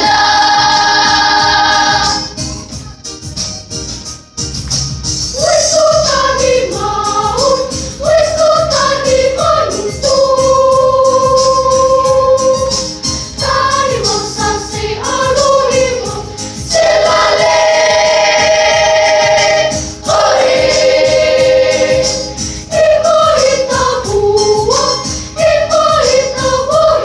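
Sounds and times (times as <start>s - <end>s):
choir singing gospel: 0.0s - 2.4s, 5.3s - 27.0s.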